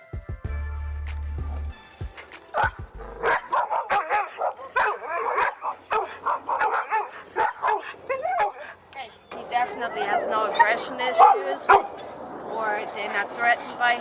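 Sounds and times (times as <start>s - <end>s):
dogs barking and yipping: 1.4s - 14.0s.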